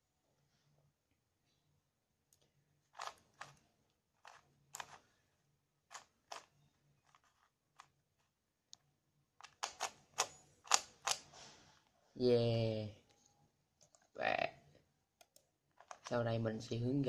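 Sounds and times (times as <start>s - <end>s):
rubik's cube clicking: 2.9s - 3.6s, 4.2s - 5.1s, 5.9s - 8.3s, 9.4s - 11.3s, 15.2s - 16.1s.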